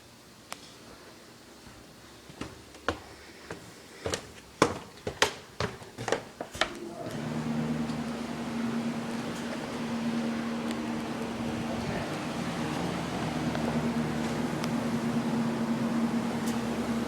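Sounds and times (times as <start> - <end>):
low steady hum: 6.8 - 17.0.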